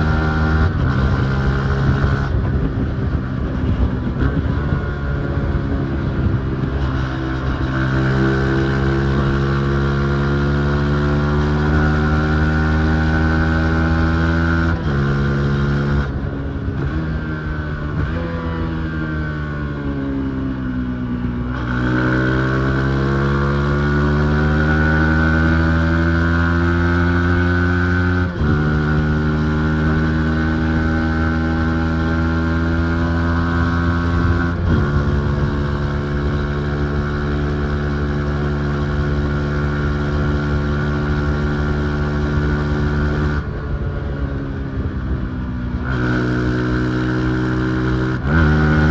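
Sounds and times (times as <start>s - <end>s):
motorcycle engine revving: 0.0s - 48.9s.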